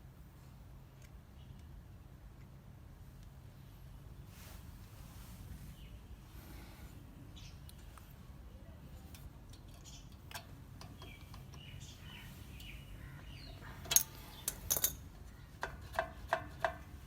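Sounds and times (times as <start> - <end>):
metal brake parts clicking: 13.8 - 16.8.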